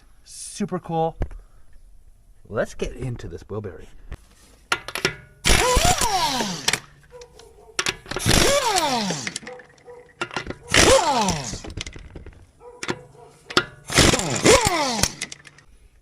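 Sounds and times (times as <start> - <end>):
impact wrench hammering: 4.7 - 7.0, 7.8 - 15.6.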